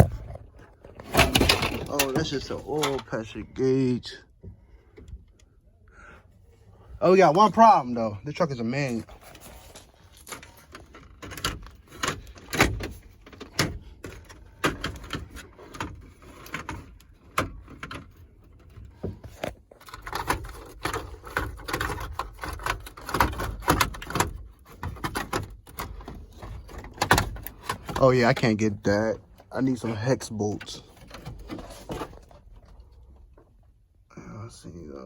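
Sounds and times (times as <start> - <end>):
hand tools clanking on metal: 1.0 - 3.2.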